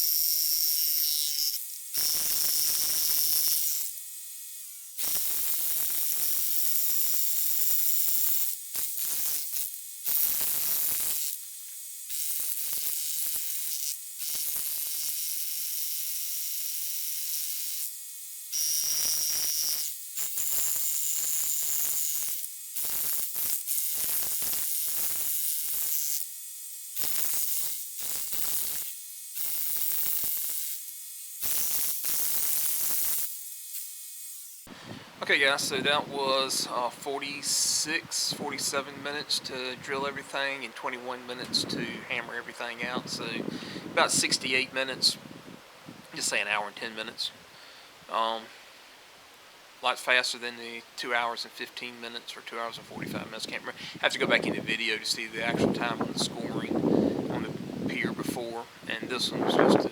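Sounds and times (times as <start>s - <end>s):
rotary hammer drill: 0.0s - 4.1s, 4.9s - 34.8s
jackhammer: 2.0s - 3.9s.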